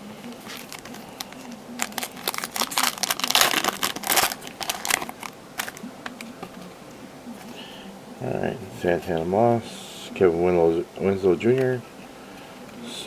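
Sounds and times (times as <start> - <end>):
foil wrapper crinkling: 0.3 - 6.6.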